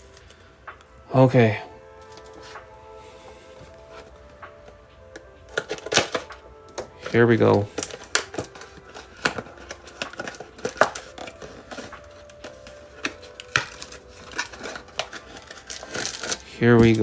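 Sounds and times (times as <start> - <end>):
wrapper and card crinkles and snaps: 5.2 - 17.0.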